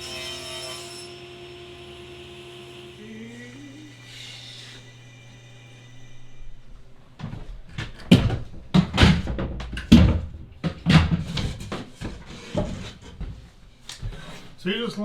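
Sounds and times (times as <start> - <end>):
wooden panels knocking: 7.7 - 13.4.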